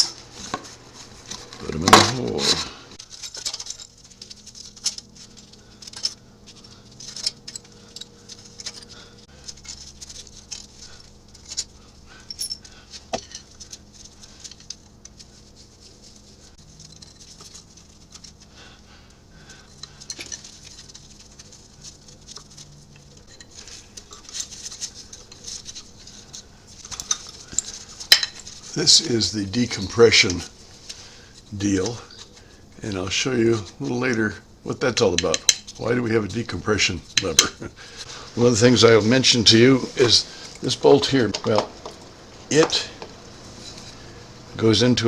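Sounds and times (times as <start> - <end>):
faint steady hum: 0.0 - 45.0
small steel bolts clinking: 3.0 - 15.3, 19.6 - 30.6, 34.9 - 37.6, 38.4 - 44.6.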